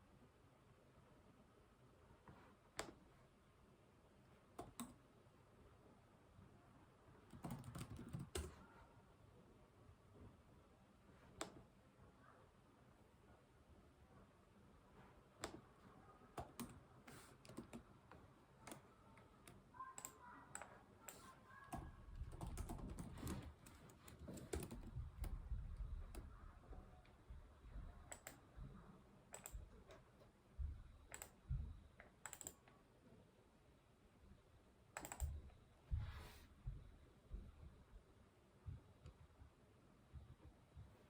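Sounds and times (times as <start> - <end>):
faint keyboard typing: 2.2 - 3.1, 4.2 - 5.1, 7.2 - 9.0, 11.2 - 11.7, 15.3 - 32.9, 34.9 - 36.3.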